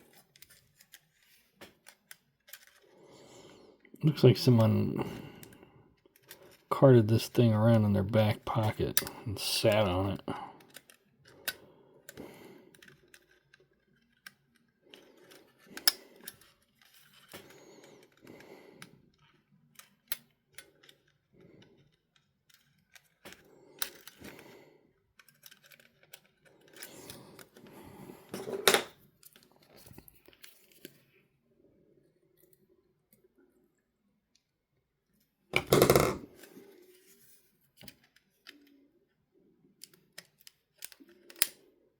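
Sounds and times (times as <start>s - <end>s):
small tools clicking and tapping: 10.6s - 24.4s, 25.2s - 27.5s, 39.8s - 41.6s.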